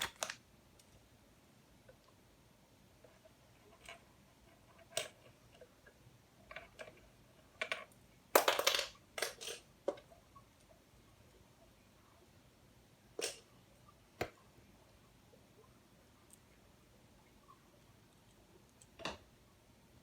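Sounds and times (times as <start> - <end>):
plastic pieces clicking: 0.0 - 0.4, 7.6 - 9.6.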